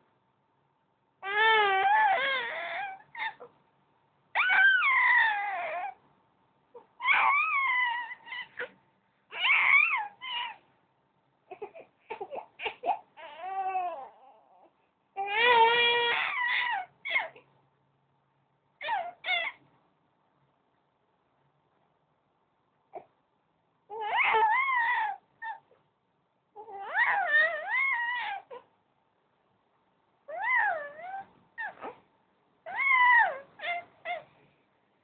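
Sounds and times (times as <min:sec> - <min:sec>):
baby squealing: 0:01.2 - 0:03.5, 0:04.4 - 0:06.0, 0:07.0 - 0:10.6, 0:15.3 - 0:17.4, 0:18.8 - 0:19.6, 0:23.9 - 0:25.6, 0:26.6 - 0:28.6, 0:30.3 - 0:32.0, 0:32.7 - 0:34.3.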